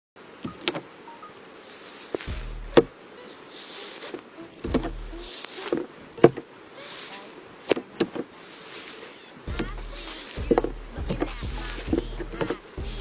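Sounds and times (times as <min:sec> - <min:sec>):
slime squelching: 0:01.6 - 0:13.0
low handling thumps: 0:02.3 - 0:02.9, 0:04.7 - 0:05.3, 0:09.5 - 0:13.0.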